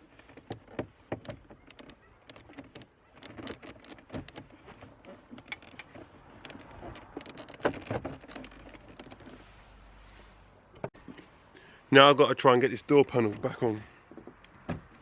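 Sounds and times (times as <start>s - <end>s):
car door parts clicking and knocking: 3.2s - 9.4s, 10.8s - 11.2s, 13.2s - 15.0s.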